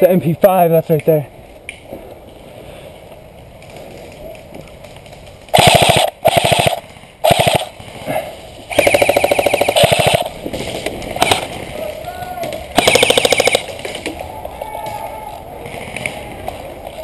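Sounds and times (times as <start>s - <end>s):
airsoft gun full-auto bursts: 5.5s - 7.9s, 8.7s - 10.4s, 11.2s - 11.5s, 12.8s - 13.8s.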